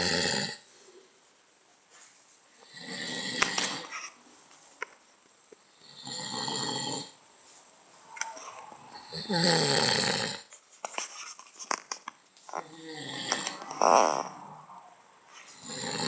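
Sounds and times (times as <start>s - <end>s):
man snoring: 0.0s - 0.6s, 2.6s - 3.9s, 5.7s - 7.2s, 8.9s - 10.5s, 12.6s - 14.3s, 15.5s - 16.0s.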